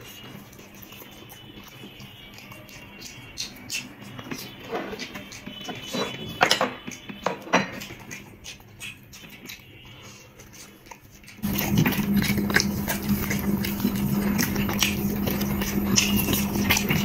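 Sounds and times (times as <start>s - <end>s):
wet chewing: 0.0s - 17.0s
lip smacks and clicks: 7.8s - 17.0s
steady low hum: 11.4s - 17.0s.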